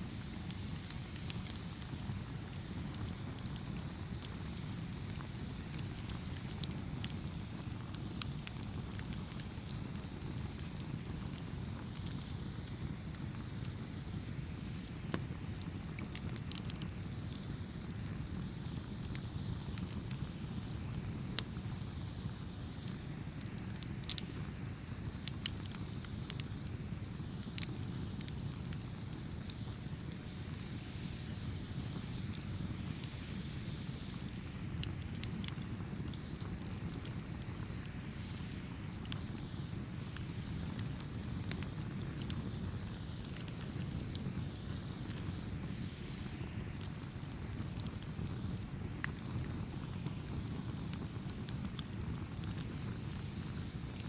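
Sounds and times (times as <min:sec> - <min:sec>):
burning wood crackling: 0:00.0 - 0:54.0
campfire burning: 0:00.0 - 0:54.0.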